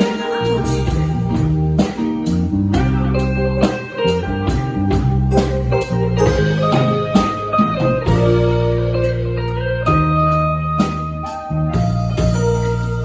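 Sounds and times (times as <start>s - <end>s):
instrumental guitar music with beat: 0.0s - 13.0s.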